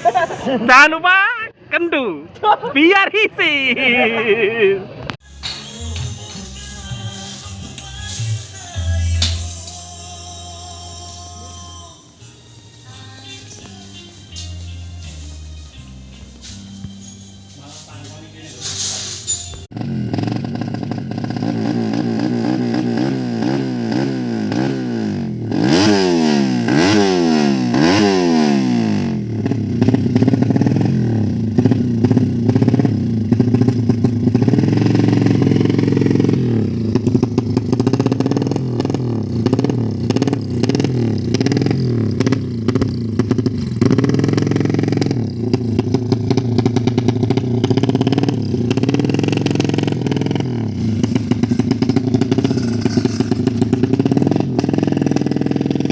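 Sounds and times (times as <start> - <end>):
motorcycle engine revving: 19.6 - 55.9.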